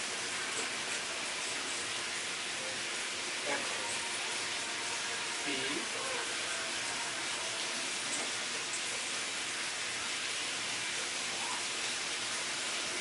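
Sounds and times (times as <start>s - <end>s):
computer fans airy hiss: 0.0s - 13.0s.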